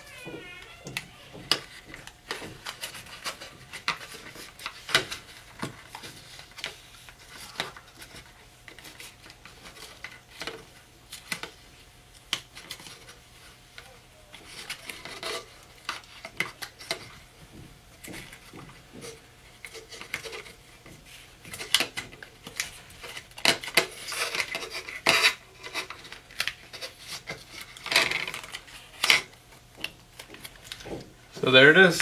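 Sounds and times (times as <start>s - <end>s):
hand tools clicking and scraping: 14.3s - 17.2s, 21.5s - 29.4s.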